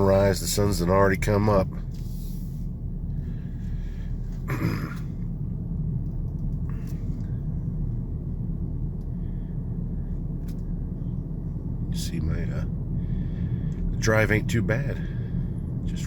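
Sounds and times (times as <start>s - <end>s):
car driving heard from cabin: 0.0s - 16.0s.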